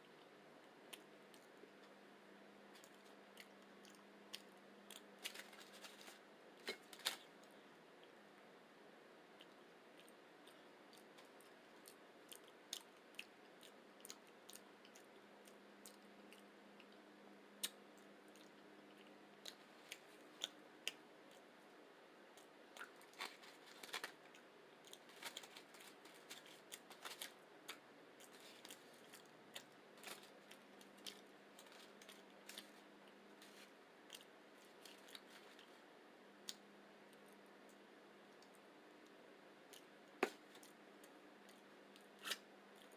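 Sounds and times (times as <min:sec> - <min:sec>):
faint steady hum: 0:00.0 - 0:42.9
person chewing food: 0:02.8 - 0:07.2, 0:09.4 - 0:17.0, 0:17.6 - 0:21.6, 0:22.3 - 0:35.8.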